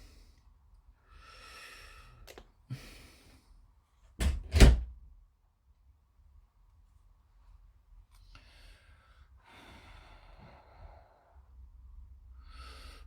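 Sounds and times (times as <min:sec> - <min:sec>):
person breathing: 0:01.0 - 0:03.6, 0:08.2 - 0:11.6, 0:12.3 - 0:13.0.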